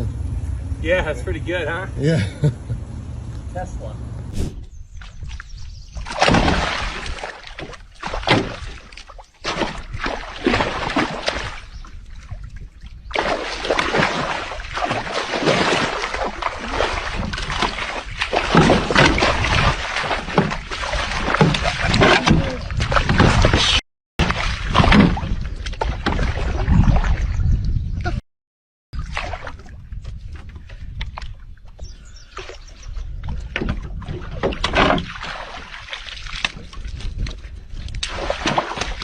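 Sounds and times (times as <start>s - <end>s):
water rushing and splashing: 6.1s - 11.8s, 13.2s - 23.6s.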